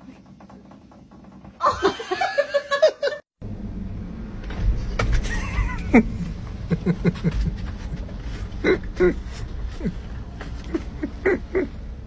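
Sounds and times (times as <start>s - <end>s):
steady low rumble: 3.4s - 12.0s.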